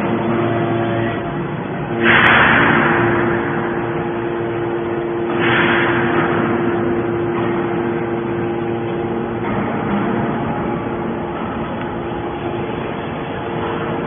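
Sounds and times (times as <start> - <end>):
hydraulic baler humming: 0.0 - 14.0
rush of noise: 1.0 - 14.0.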